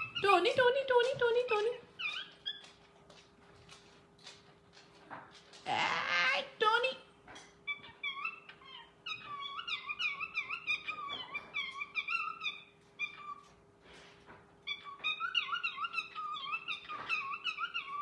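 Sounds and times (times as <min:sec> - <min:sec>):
cockatiel chattering and whistling: 0:07.7 - 0:13.5, 0:14.6 - 0:18.0.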